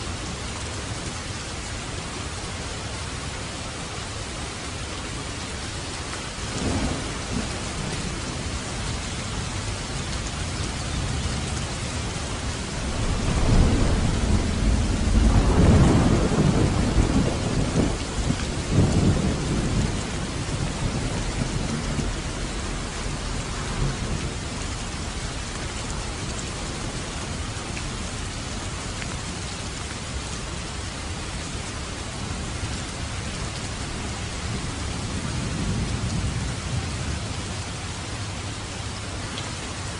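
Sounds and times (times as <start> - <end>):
heavy rain: 0.0 - 39.9
thunder rumbling: 6.3 - 28.9, 32.1 - 37.5.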